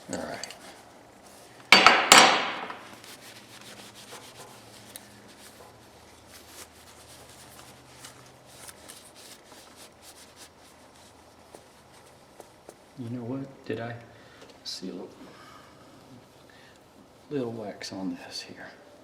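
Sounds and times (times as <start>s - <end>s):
metal tool knocking on workbench: 1.7s - 2.8s.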